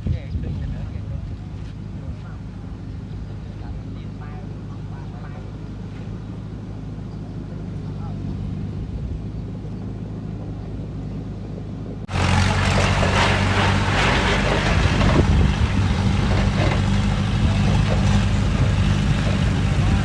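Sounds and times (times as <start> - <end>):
diesel engine running: 0.0 - 20.0
rough noisy clatter: 12.1 - 20.0.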